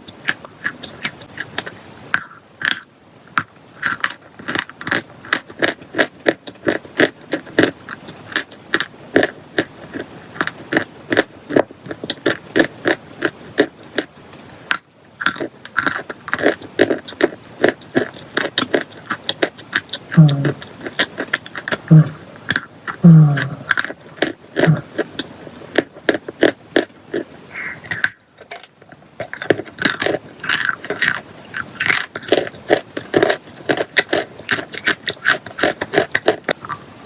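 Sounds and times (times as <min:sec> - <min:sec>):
brittle material crunching: 0:27.6 - 0:36.8.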